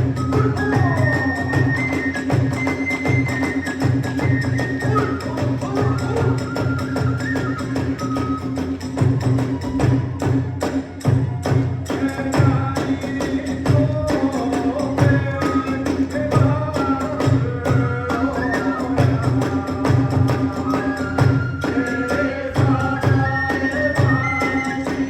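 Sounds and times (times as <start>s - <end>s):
high bamboo flute melody: 0.0s - 11.8s, 17.6s - 25.0s
fast drumming: 0.0s - 25.0s
small hand cymbals jingling: 0.0s - 25.0s.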